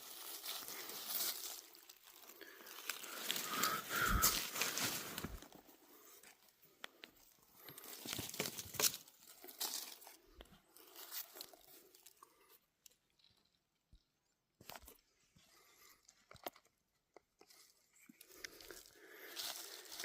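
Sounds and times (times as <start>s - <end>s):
dry leaves crunching and rustling: 0.0s - 5.5s.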